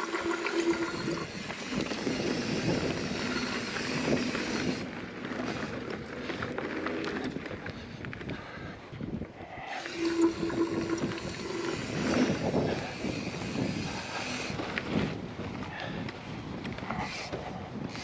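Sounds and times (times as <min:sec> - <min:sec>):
bike rattling over bumps: 0:01.3 - 0:08.3
bike tyres rolling on dirt: 0:01.3 - 0:09.9, 0:11.8 - 0:18.0.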